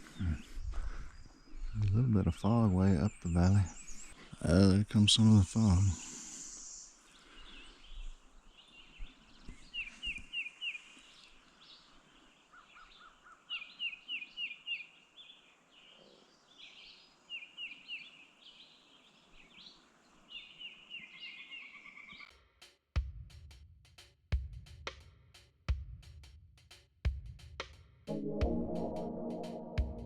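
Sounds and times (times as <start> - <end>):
songbirds singing: 0.0 - 22.3.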